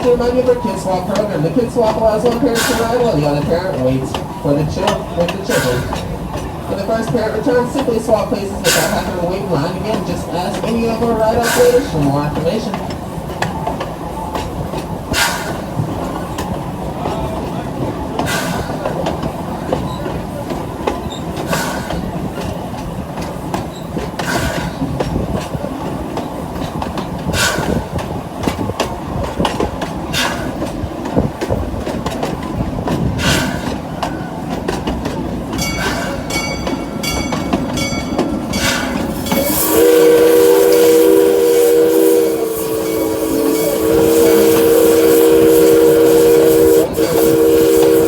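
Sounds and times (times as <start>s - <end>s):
rail joints clacking: 0.0s - 48.0s
train cars rumbling: 0.0s - 48.0s
steam whistle chord: 35.6s - 48.0s.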